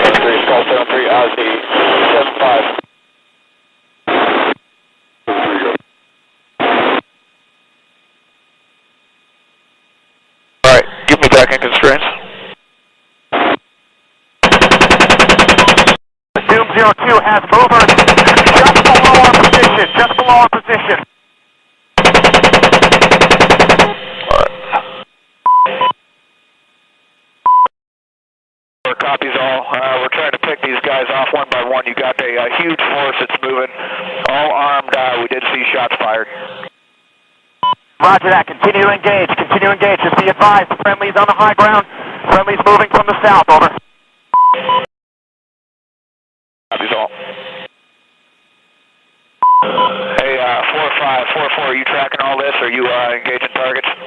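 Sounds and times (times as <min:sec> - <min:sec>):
harsh radio noise bursts: 0:00.0 - 0:02.9, 0:04.0 - 0:04.6, 0:05.2 - 0:05.9, 0:06.6 - 0:07.1, 0:10.6 - 0:12.6, 0:13.3 - 0:13.6, 0:14.4 - 0:21.1, 0:22.0 - 0:25.0, 0:28.9 - 0:36.7, 0:37.6 - 0:43.9
faint radio hiss: 0:00.0 - 0:14.3, 0:19.2 - 0:21.9, 0:28.9 - 0:43.8, 0:46.7 - 0:47.1, 0:50.2 - 0:54.0
chain gun firing burst: 0:14.4 - 0:16.0, 0:17.8 - 0:19.8, 0:22.0 - 0:23.9
short radio beeps: 0:18.8 - 0:20.9, 0:25.5 - 0:26.0.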